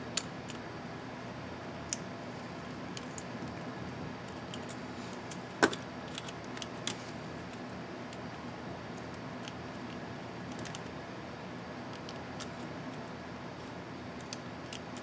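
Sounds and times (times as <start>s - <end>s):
background hum and hiss: 0.0s - 15.0s
small plastic and metal clicks: 9.0s - 11.0s.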